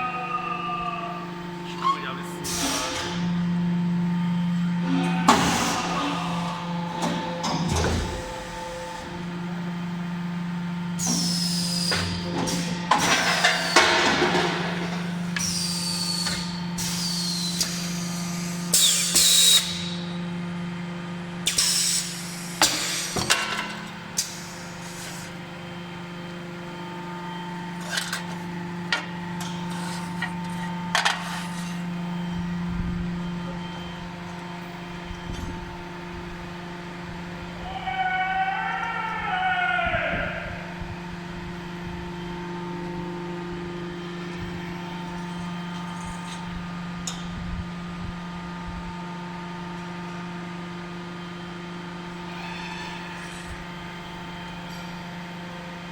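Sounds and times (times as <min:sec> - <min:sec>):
machine motor hum: 0:00.0 - 0:55.9
machine clunks and clicks: 0:05.3 - 0:08.7.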